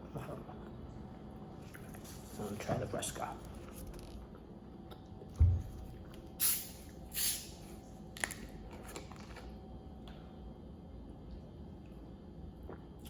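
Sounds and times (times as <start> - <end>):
short hissing of can opening: 6.4 - 7.6.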